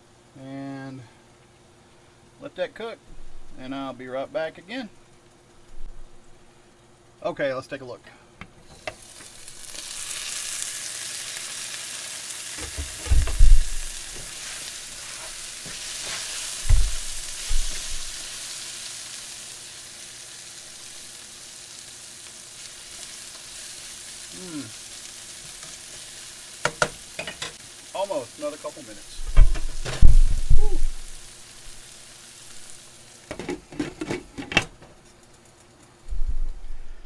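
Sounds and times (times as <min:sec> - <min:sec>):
vegetables sizzling in a skillet: 0:08.6 - 0:37.0.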